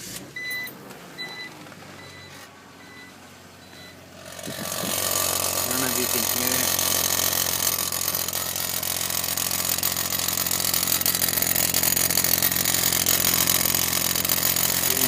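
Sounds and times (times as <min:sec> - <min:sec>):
car engine idling: 0:00.0 - 0:15.0
exhaust rattle: 0:00.0 - 0:15.0.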